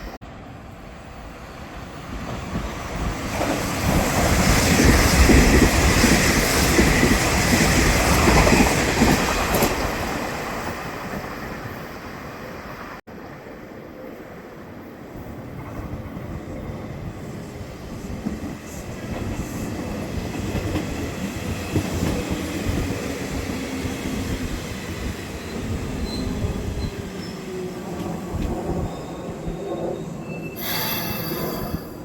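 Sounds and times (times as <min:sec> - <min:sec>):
electric train running on track: 0:14.7 - 0:32.0
high-pitched wheel squeal: 0:29.9 - 0:32.0.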